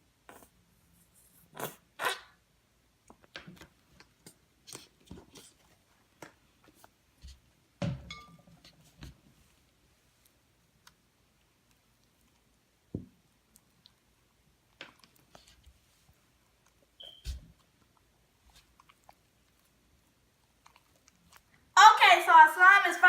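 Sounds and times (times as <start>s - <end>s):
slime squishing: 10.2s - 21.7s.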